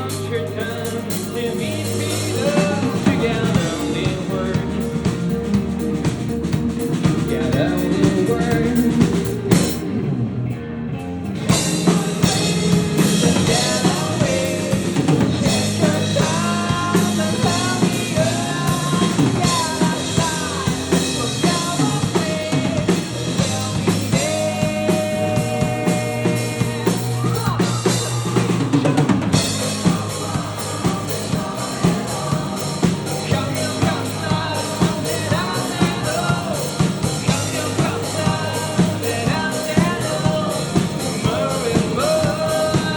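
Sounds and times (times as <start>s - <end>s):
drum kit beat: 0.0s - 10.0s, 11.4s - 42.9s
live rock band playing: 0.0s - 42.9s.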